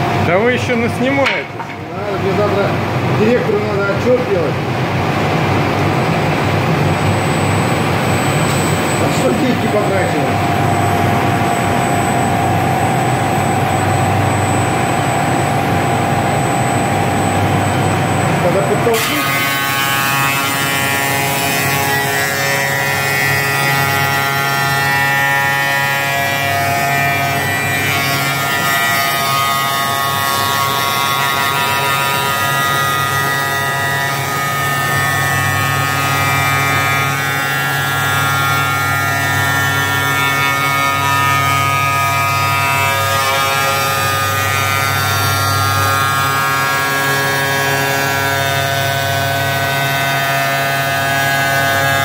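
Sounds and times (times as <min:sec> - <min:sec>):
milling machine whine: 0:00.0 - 0:28.8.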